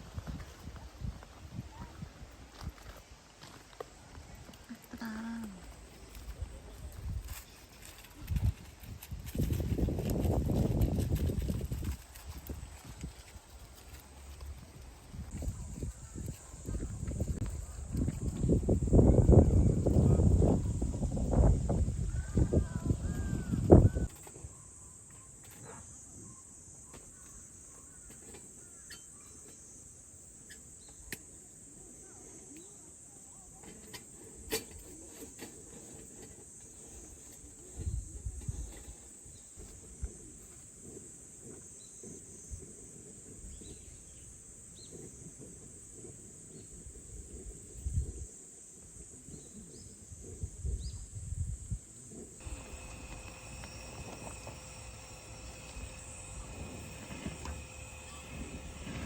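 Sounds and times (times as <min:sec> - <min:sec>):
crickets chirring: 0:52.4 - 0:59.0.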